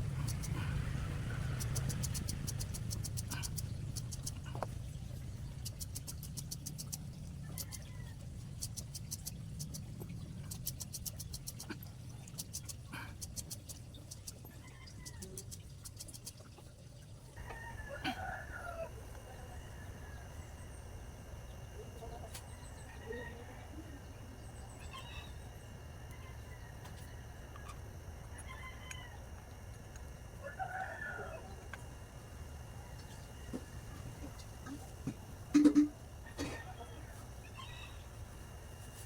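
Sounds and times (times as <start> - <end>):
low hum: 0.0 - 39.0
chickens clucking: 35.6 - 37.9.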